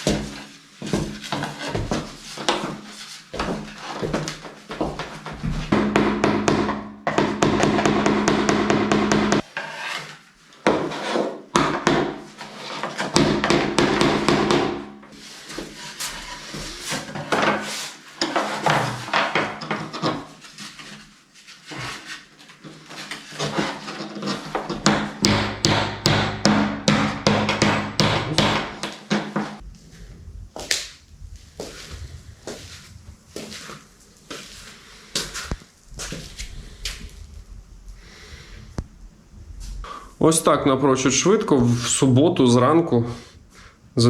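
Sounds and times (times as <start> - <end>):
hammer knocking wooden boards: 0.0 - 2.8, 3.4 - 9.5, 11.5 - 12.3, 13.0 - 15.2, 24.5 - 29.6
boards rubbing and scraping: 0.0 - 38.8.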